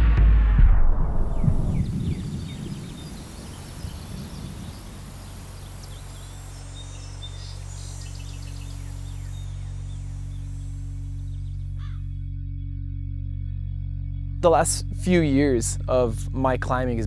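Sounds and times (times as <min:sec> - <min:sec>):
music: 0:00.0 - 0:03.0, 0:06.3 - 0:17.0
low steady drone: 0:01.1 - 0:17.0
birds chirping: 0:01.3 - 0:12.0
high insect buzz: 0:01.3 - 0:12.1.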